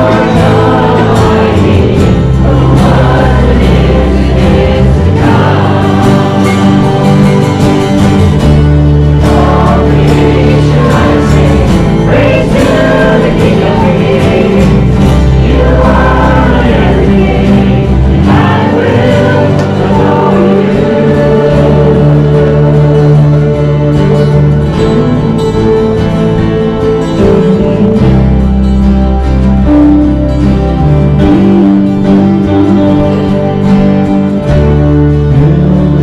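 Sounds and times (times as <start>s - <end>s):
choir singing a gospel hymn: 0.0s - 25.2s
instrumental accompaniment: 0.0s - 36.0s.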